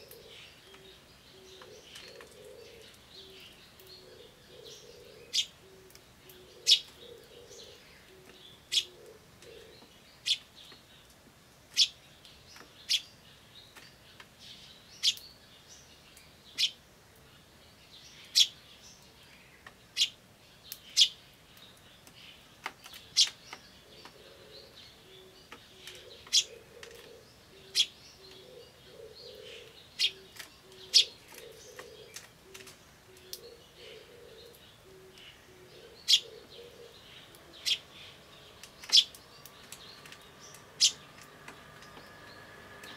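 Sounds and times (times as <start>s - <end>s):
dove cooing low: 0.0s - 9.8s, 23.8s - 37.9s
sparrow chick chirping: 0.0s - 10.5s, 15.0s - 15.3s, 16.5s - 16.8s, 18.1s - 19.1s, 19.9s - 42.9s.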